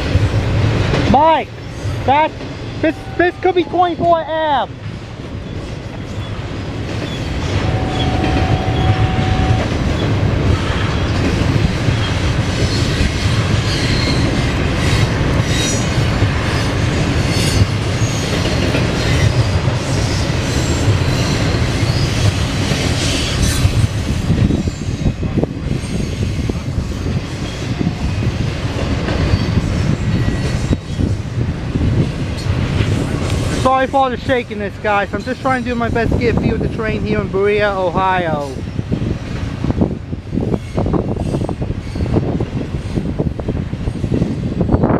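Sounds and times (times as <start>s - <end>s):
freight train rumbling past: 0.0s - 44.9s
rail-joint clicks: 4.8s - 27.8s, 32.0s - 33.7s
high wheel squeal: 7.1s - 9.7s.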